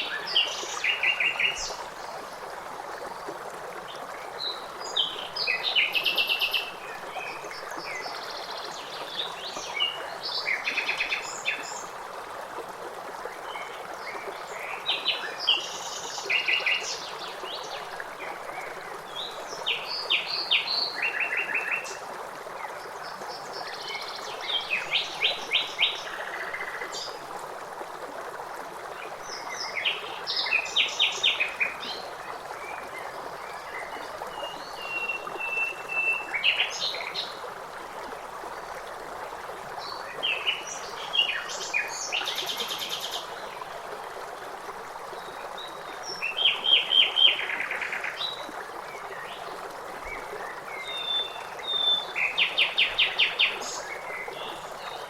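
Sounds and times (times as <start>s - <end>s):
songbirds singing: 49.1s - 55.0s.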